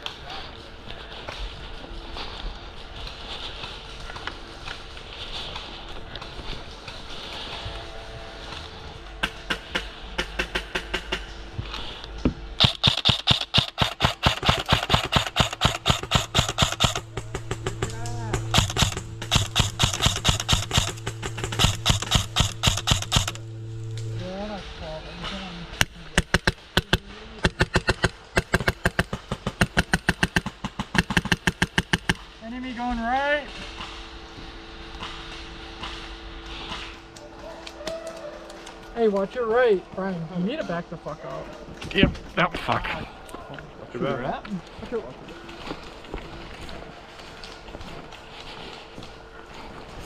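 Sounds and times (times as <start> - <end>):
airsoft gun firing rapid shots: 9.2 - 11.3, 12.6 - 23.4, 26.1 - 32.2.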